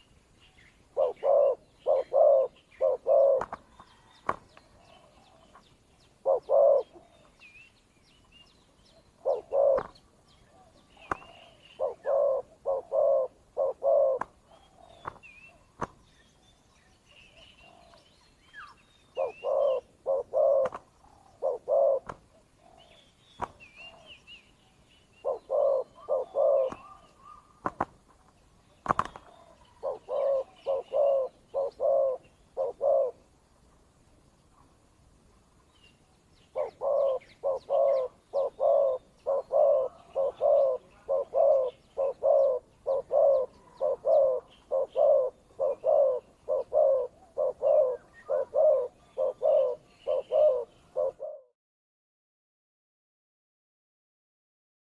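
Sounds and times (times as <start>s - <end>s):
small birds chirping: 0.0s - 51.5s
doves cooing: 0.8s - 5.6s, 6.2s - 7.3s, 9.2s - 15.8s, 19.2s - 24.1s, 25.2s - 27.9s, 28.8s - 33.3s, 36.5s - 51.5s.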